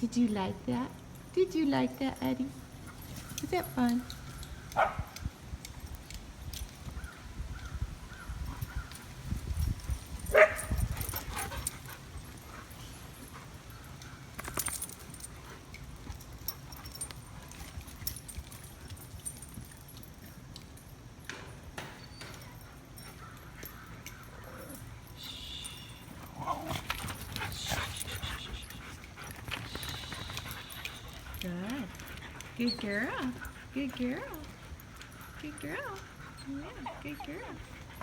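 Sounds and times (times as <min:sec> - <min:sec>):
dogs barking and whining: 0:02.6 - 0:05.4, 0:09.9 - 0:20.0, 0:21.8 - 0:25.2, 0:25.8 - 0:38.0.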